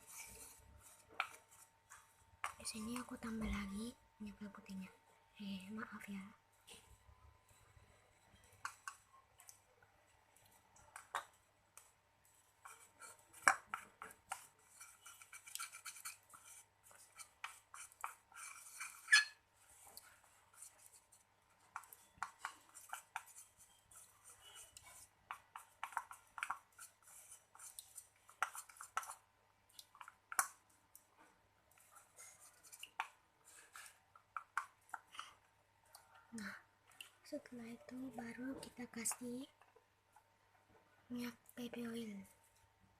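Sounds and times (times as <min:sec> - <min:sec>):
utensil stirring paste in container: 0:00.0 - 0:03.7, 0:08.4 - 0:36.0.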